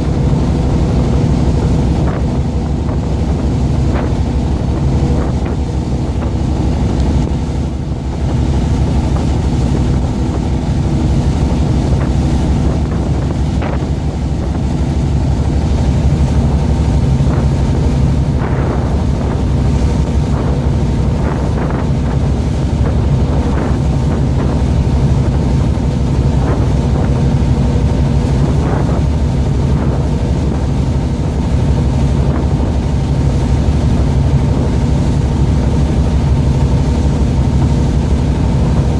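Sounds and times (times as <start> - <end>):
boat engine humming: 0.0 - 38.9
water splashing against hull: 0.0 - 38.9
wind buffeting microphone: 0.0 - 38.9.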